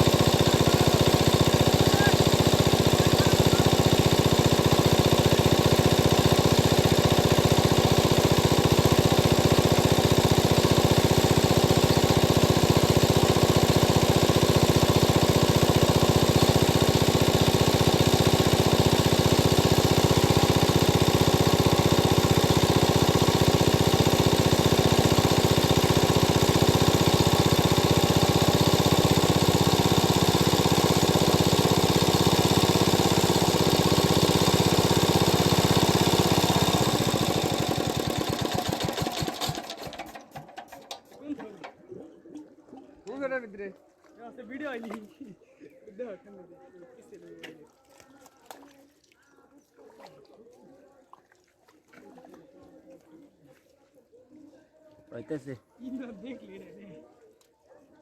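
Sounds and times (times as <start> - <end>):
small engine running: 0.0 - 41.4.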